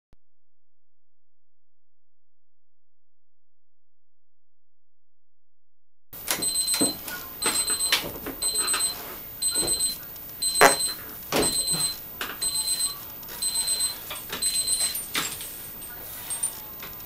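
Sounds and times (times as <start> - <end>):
electronic timer beeping: 6.2 - 15.2.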